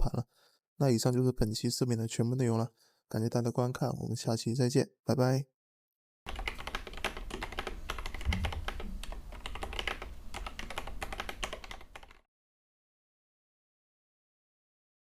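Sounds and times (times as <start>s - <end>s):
mechanical keyboard typing: 6.3s - 12.2s.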